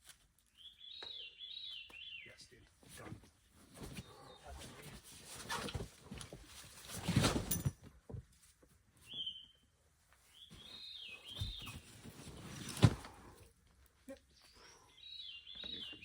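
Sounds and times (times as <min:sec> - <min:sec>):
songbird calling: 0:00.6 - 0:02.5, 0:14.4 - 0:16.0.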